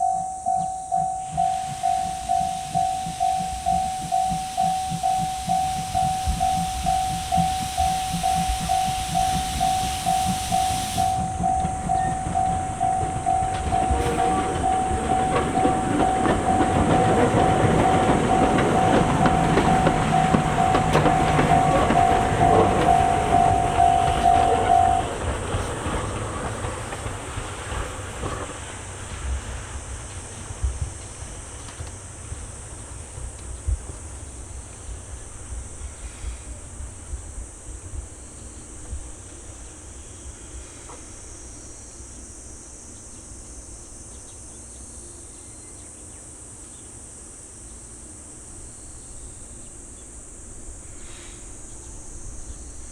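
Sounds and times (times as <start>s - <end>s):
level crossing alarm ringing: 0.0s - 26.0s
train wheels clattering: 0.0s - 41.3s.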